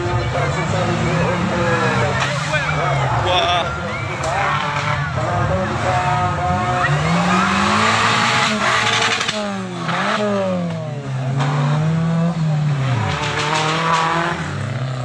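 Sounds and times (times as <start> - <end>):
engine revving hard: 4.3 - 15.0.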